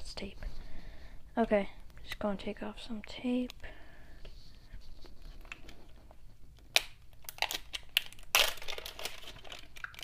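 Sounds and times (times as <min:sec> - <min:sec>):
foil crinkling: 0:06.7 - 0:10.0.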